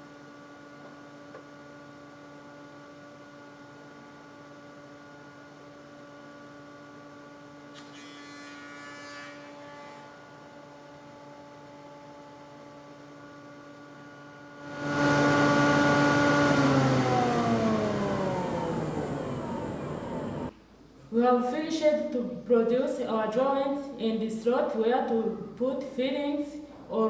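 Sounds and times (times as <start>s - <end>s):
machine motor humming: 14.6s - 20.5s.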